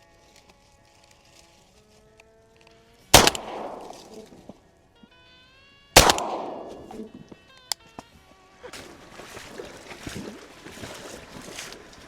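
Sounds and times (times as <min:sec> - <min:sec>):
shotgun shots: 0:03.2 - 0:04.4, 0:06.0 - 0:07.2
splashing in shallow water: 0:08.6 - 0:12.0.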